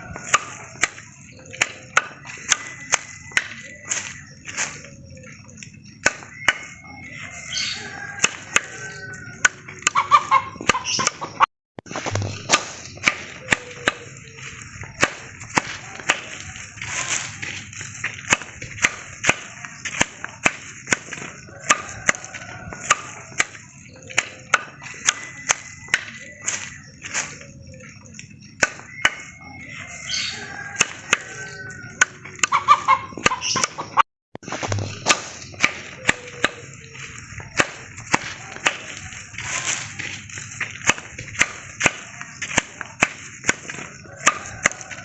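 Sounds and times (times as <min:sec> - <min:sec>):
axe chopping into tree trunk: 0:11.8 - 0:14.1, 0:15.0 - 0:26.2, 0:34.4 - 0:36.6, 0:37.6 - 0:44.9.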